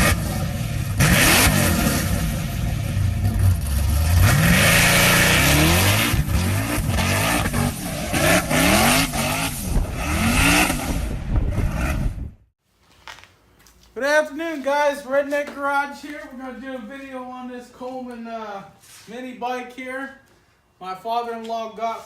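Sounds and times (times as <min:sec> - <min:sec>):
engine revving: 0:00.0 - 0:12.4.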